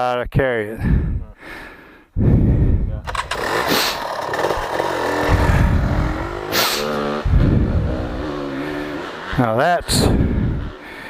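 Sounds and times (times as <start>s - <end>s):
loud rushing burst: 3.1s - 9.0s
off-road vehicle engine revving: 3.1s - 11.0s.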